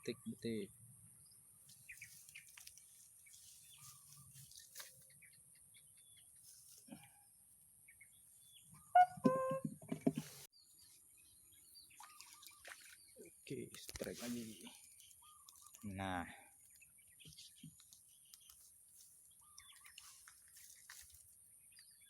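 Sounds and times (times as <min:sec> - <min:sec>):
faint bird chirps: 0:00.0 - 0:07.3, 0:10.6 - 0:13.6, 0:14.2 - 0:18.7, 0:19.3 - 0:20.9.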